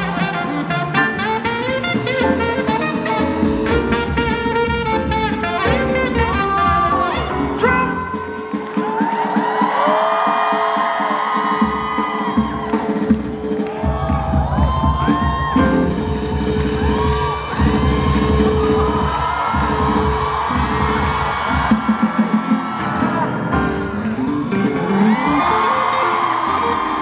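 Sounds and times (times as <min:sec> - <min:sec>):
live band playing instrumental: 0:00.0 - 0:14.1, 0:15.0 - 0:27.0.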